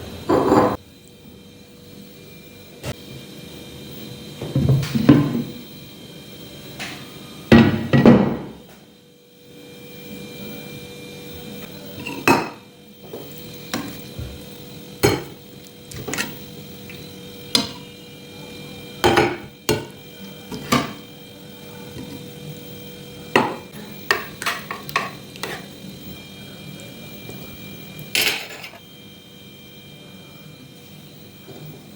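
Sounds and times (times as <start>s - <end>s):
utensils clinking against cookware: 11.9s - 14.4s, 15.0s - 17.9s, 19.0s - 21.1s, 23.4s - 25.7s, 28.1s - 28.8s.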